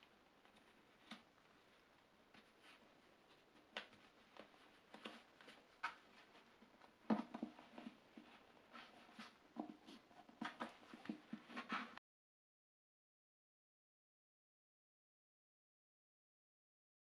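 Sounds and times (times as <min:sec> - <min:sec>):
rope rustling and knocking: 0:03.7 - 0:12.0.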